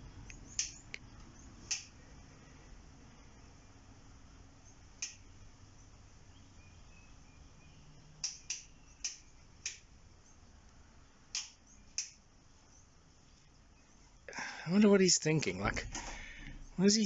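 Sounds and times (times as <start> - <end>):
faint low hum: 0.0 - 17.0
sharp short clicks: 0.3 - 1.0, 1.7 - 2.0, 5.0 - 5.3, 8.2 - 9.9, 11.3 - 12.2.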